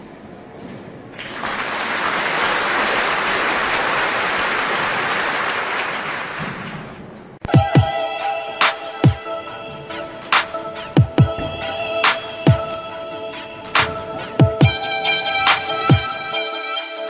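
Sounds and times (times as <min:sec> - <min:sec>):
electronic music: 0:07.5 - 0:17.0.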